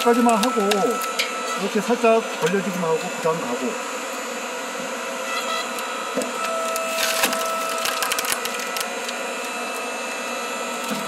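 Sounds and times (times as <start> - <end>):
hydraulic log splitter whining: 0.0 - 11.0
wood cracking and splintering: 6.8 - 8.9.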